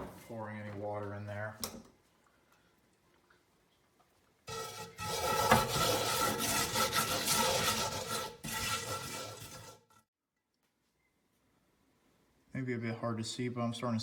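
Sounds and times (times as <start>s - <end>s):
salt scrubbed in iron skillet: 4.5s - 9.8s.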